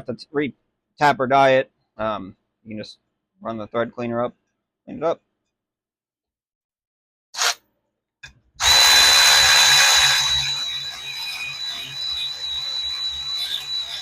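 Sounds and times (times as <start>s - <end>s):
power drill whining: 8.6s - 14.0s.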